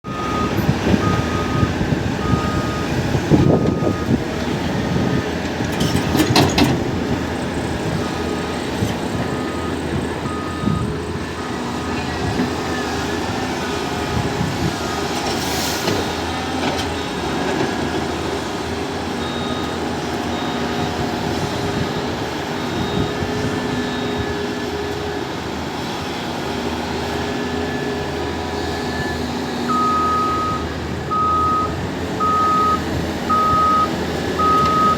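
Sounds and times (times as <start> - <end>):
diesel engines running: 0.0 - 34.9
reversing alarm beeping: 0.1 - 4.2, 7.3 - 15.4, 18.6 - 24.8, 27.7 - 34.9.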